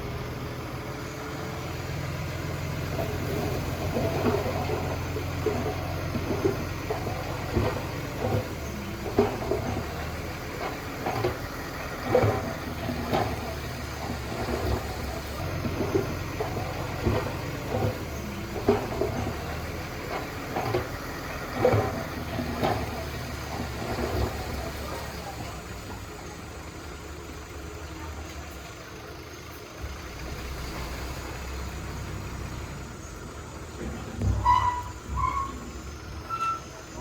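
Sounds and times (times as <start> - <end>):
diesel engine running: 0.0 - 37.0
metal knocks and clanks: 3.0 - 25.0, 33.8 - 37.0.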